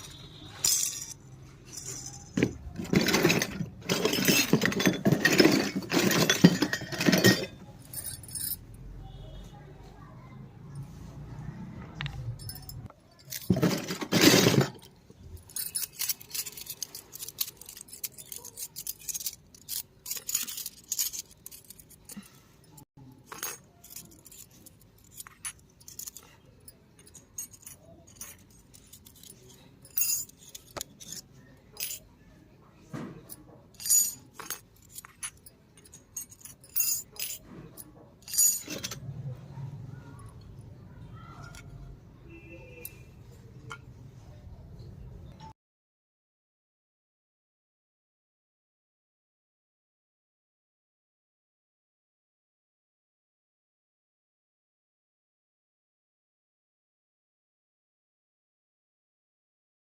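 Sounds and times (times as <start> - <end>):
toy kitchen pieces clinking: 0.0 - 9.2, 12.0 - 39.1, 40.0 - 43.1.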